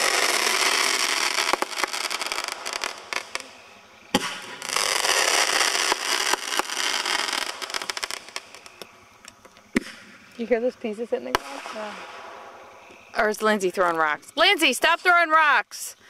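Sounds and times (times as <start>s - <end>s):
fireworks crackling: 0.0s - 10.5s, 11.2s - 15.5s
firework bang: 4.1s - 8.4s, 11.3s - 12.7s.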